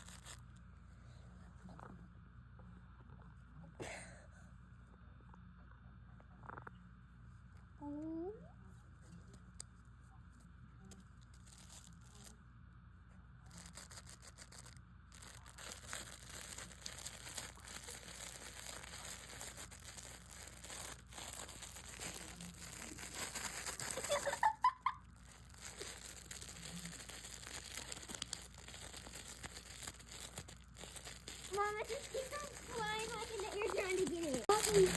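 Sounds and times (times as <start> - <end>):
crinkling and rustling toys: 0.0 - 0.7, 10.4 - 12.4, 13.5 - 34.9.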